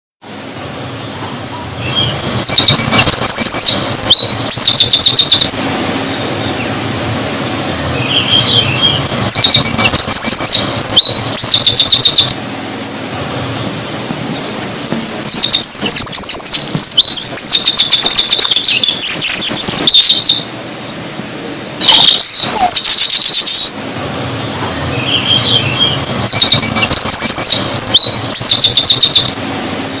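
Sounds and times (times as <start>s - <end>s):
songbirds chirping and singing: 1.0s - 6.8s, 7.6s - 12.3s, 14.3s - 23.0s, 24.6s - 29.4s.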